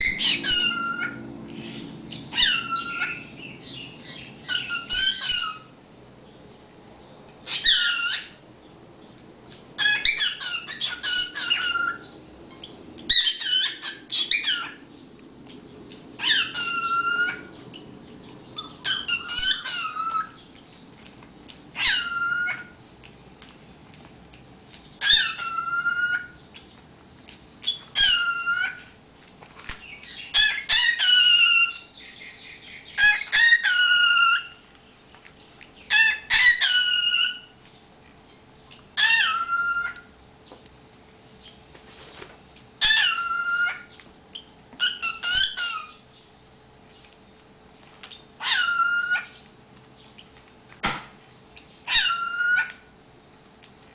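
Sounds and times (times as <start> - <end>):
cockatiel whistling calls: 0.0 - 5.7, 7.5 - 8.4, 9.8 - 12.1, 13.1 - 14.8, 16.2 - 17.5, 18.6 - 20.4, 21.8 - 22.8, 25.0 - 26.4, 27.6 - 28.8, 30.0 - 31.9, 32.9 - 34.6, 35.9 - 37.5, 39.0 - 40.1, 42.8 - 46.0, 48.4 - 49.4, 51.9 - 52.8.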